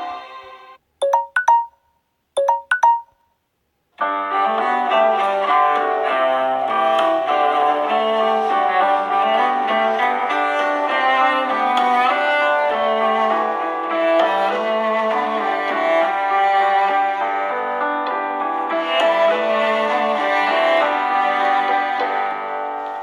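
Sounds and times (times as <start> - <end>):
ringtone with strings and piano: 1.0 - 3.3.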